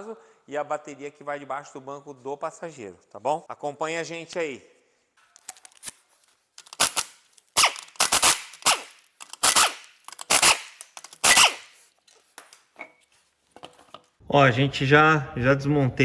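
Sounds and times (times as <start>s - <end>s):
pneumatic impact wrench bursts: 6.6s - 11.9s
small clicks and knocks: 9.0s - 11.2s, 12.0s - 14.2s.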